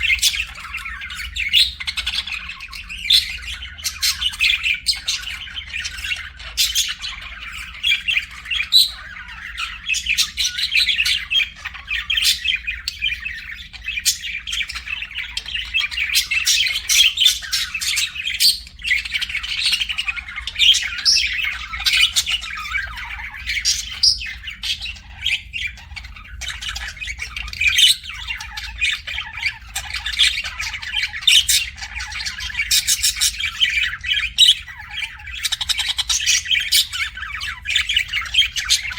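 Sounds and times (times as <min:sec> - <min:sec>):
budgerigars chirping and chattering: 0:00.0 - 0:38.9.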